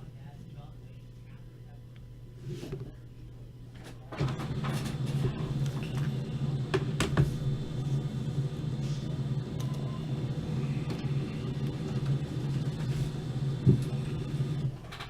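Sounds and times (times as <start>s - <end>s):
printer humming: 3.8s - 15.0s
paper feed clicks: 4.1s - 15.0s.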